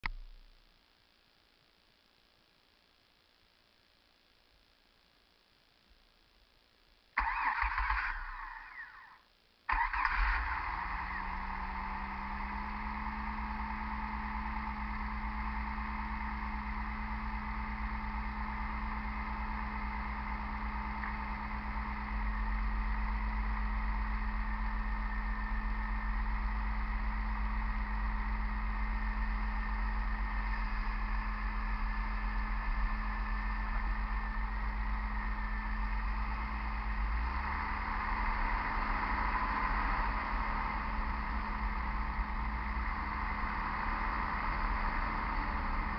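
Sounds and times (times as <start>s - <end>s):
low hum: 0.0s - 45.9s
vehicle grinding drone: 10.6s - 45.9s.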